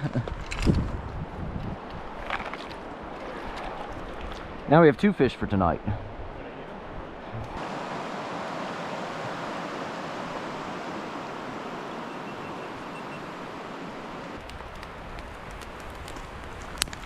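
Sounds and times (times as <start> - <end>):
river water rushing: 7.2 - 14.4.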